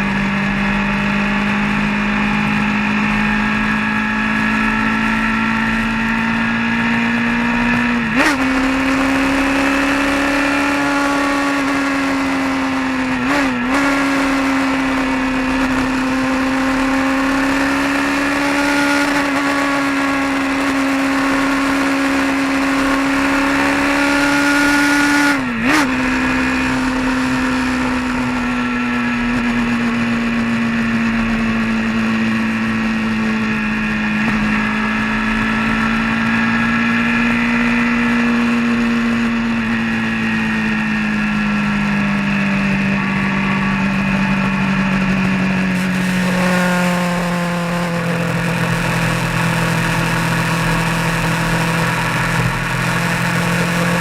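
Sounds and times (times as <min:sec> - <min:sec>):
road and wind noise: 0:00.0 - 0:54.0
vehicle engine running: 0:00.0 - 0:54.0.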